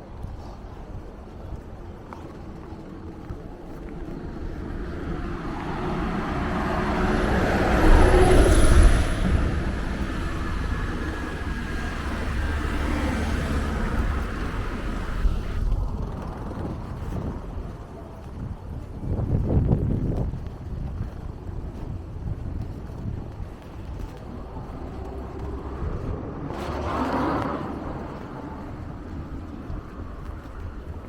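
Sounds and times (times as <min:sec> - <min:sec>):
motor vehicle passing by: 0:02.6 - 0:17.4, 0:22.9 - 0:31.0.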